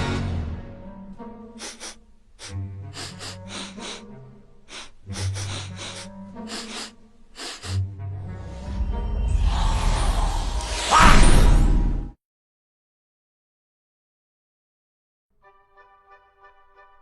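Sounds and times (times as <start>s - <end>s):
cartoon music with low bass: 0.0s - 9.5s
short sharp hissy sound effects: 1.6s - 4.0s.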